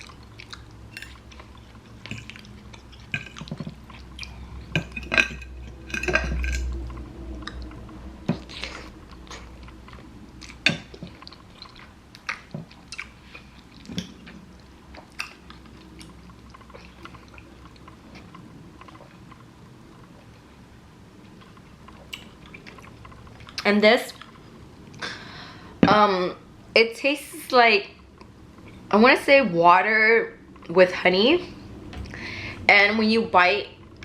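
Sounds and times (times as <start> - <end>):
noodles being chewed: 0.0 - 20.4, 21.2 - 25.0
utensils clicking against dishes: 4.8 - 7.0.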